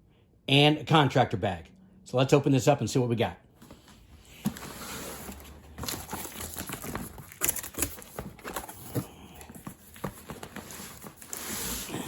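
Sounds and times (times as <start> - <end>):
cardboard packaging rustling: 3.6 - 12.0.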